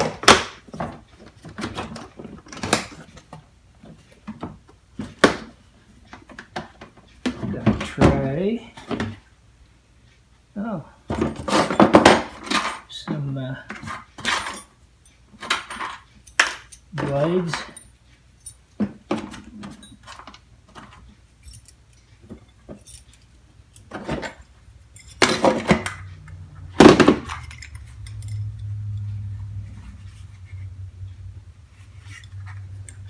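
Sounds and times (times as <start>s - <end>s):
metal tools clinking in tray: 13.7s - 29.0s
steady low hum: 14.5s - 33.0s
loud tool clatter: 23.8s - 28.8s.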